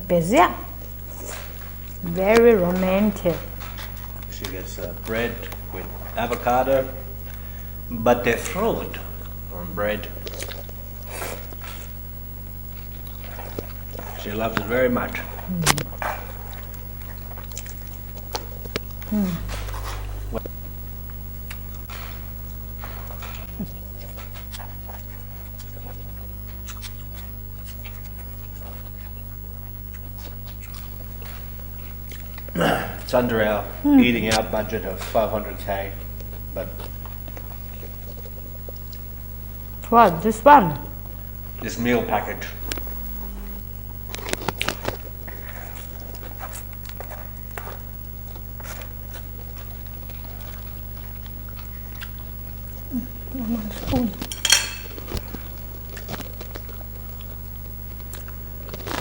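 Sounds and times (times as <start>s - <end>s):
steady low hum: 0.0s - 59.0s
cutlery and dishes clinking: 54.3s - 55.0s.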